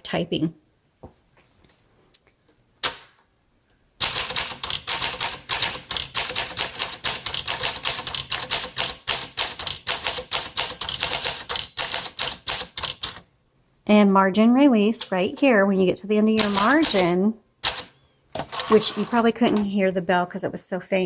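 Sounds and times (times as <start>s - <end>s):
manual typewriter typing: 4.0s - 13.3s, 16.4s - 19.7s.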